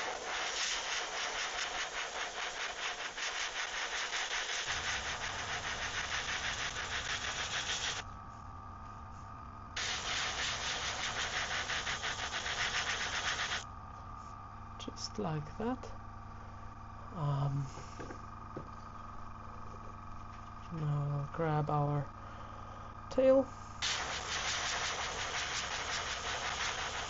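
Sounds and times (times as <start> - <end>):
airbrush spraying hiss: 0.0 - 8.4, 9.1 - 14.3, 23.8 - 27.0.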